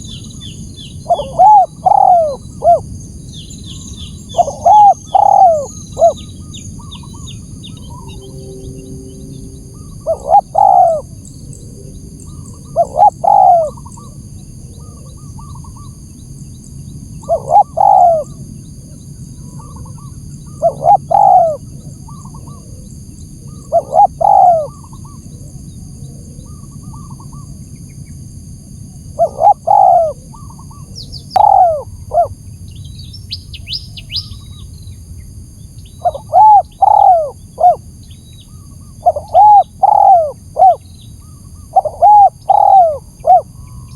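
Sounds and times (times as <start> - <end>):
dove cooing: 0.0 - 3.0, 3.6 - 15.9, 17.2 - 18.4, 19.4 - 27.4, 29.1 - 32.4, 36.0 - 37.9, 38.8 - 43.9
small bird chirping: 0.0 - 18.4, 29.2 - 35.0, 35.7 - 43.9.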